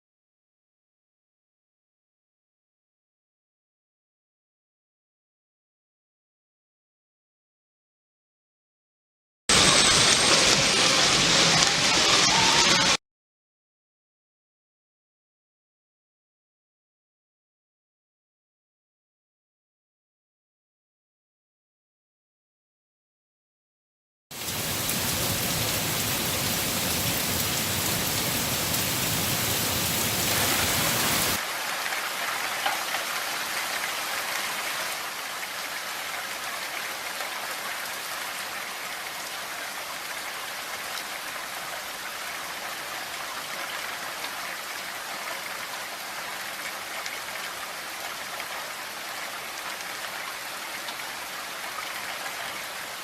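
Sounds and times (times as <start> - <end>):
steady rain falling: 9.5 - 13.0, 24.3 - 53.0.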